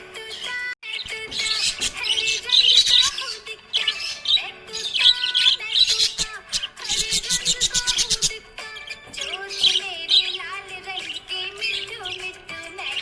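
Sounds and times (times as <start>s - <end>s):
budgerigar chirping and warbling: 0.2s - 13.0s.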